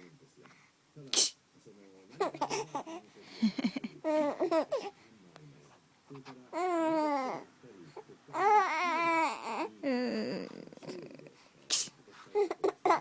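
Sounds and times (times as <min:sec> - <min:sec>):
baby babbling: 0:02.2 - 0:03.0, 0:04.0 - 0:04.9, 0:06.5 - 0:07.5, 0:08.3 - 0:11.2, 0:12.3 - 0:13.0.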